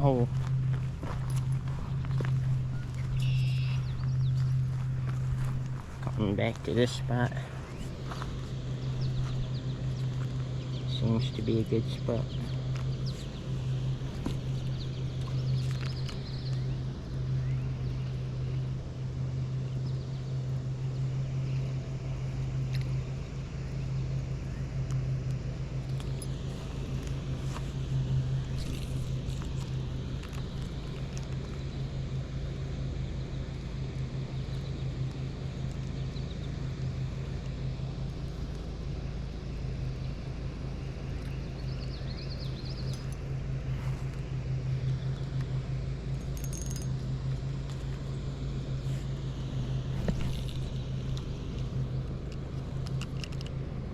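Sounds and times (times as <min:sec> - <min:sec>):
low hum: 0:00.0 - 0:53.9
low rumble: 0:00.0 - 0:53.9
high bird chirps: 0:02.0 - 0:04.6.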